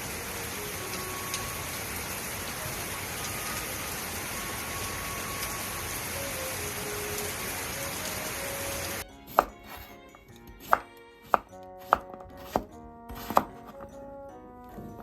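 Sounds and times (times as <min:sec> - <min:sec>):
rain hiss: 0:00.0 - 0:09.0
quiet background music: 0:00.0 - 0:15.0
knife chopping on cutting board: 0:09.3 - 0:10.0, 0:10.6 - 0:13.9.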